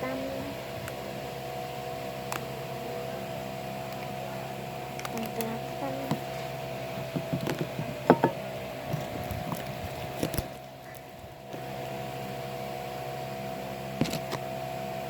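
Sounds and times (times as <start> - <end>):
electrical hum: 0.0 - 15.0.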